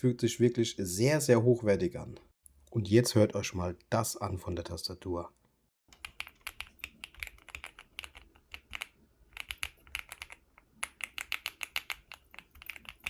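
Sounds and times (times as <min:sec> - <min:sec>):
mechanical keyboard typing: 0:05.9 - 0:13.0.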